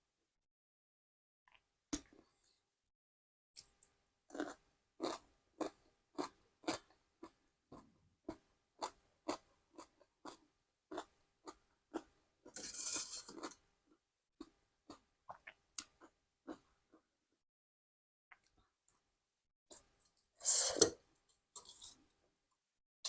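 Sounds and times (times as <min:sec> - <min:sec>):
chewing crunchy food: 0:03.6 - 0:13.6, 0:14.4 - 0:17.1.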